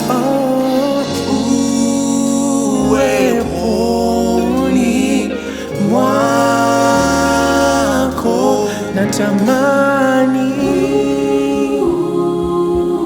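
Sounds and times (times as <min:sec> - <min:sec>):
singers holding long notes: 0:00.0 - 0:13.0.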